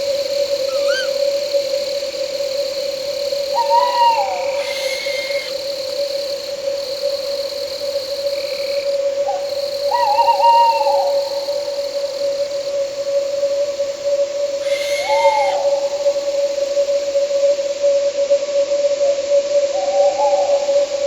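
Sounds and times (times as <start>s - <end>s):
owl hooting: 0.0s - 12.8s, 14.5s - 16.8s, 19.8s - 20.9s
crickets chirring: 0.0s - 21.0s
insect drone: 0.0s - 21.0s.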